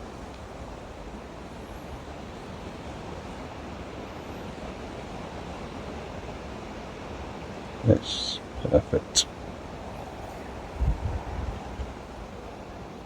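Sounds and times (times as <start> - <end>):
wind on microphone: 10.0 - 12.6.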